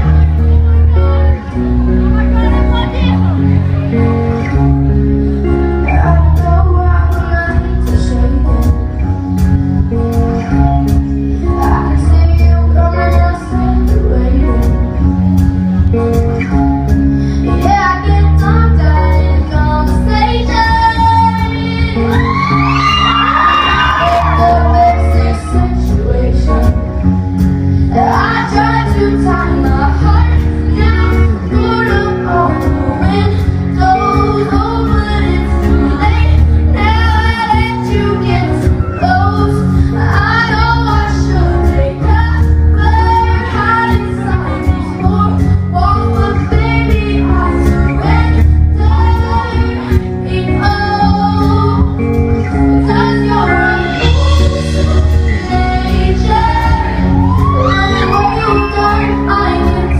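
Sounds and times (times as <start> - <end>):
band with drums and bass: 0.0 - 59.9
woman singing pop song: 5.5 - 16.5, 17.2 - 59.9.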